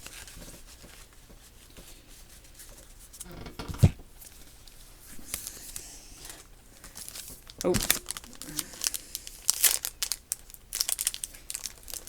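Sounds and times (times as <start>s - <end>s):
cards rustling and ticking: 5.2s - 12.0s.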